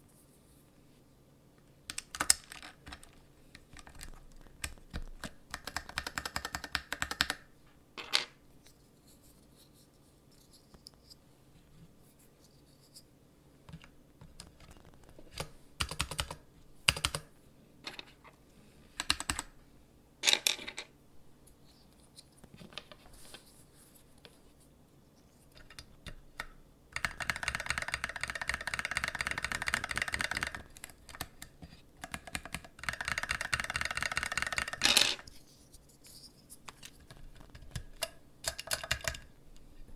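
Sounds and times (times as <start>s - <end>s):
typing on mechanical keyboard: 1.9s - 7.5s, 13.8s - 17.3s, 19.0s - 19.6s, 25.6s - 35.3s, 37.0s - 39.3s.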